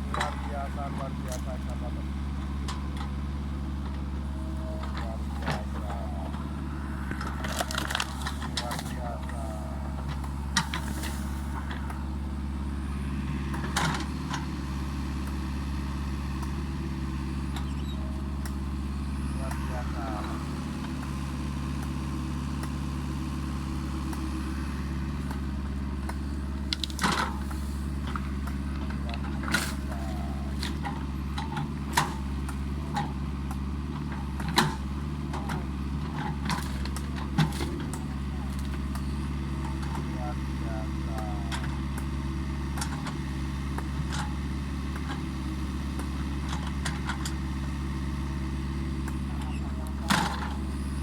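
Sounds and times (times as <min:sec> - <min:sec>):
excavator diesel engine running: 0:00.0 - 0:51.0
wood cracking: 0:03.9 - 0:12.2, 0:25.2 - 0:39.0.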